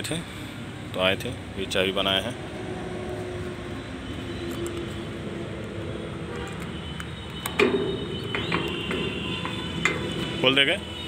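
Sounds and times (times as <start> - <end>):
road traffic noise: 0.0 - 11.0
sharp clicks: 6.5 - 10.2.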